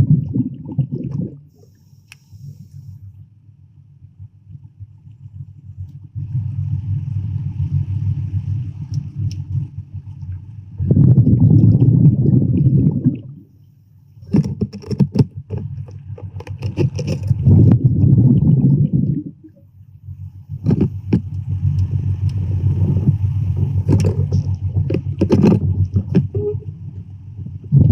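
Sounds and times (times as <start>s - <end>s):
muffled underwater rumble: 0.0s - 27.9s
sharp clicks and knocks: 14.3s - 17.4s, 20.6s - 22.4s, 23.8s - 26.4s.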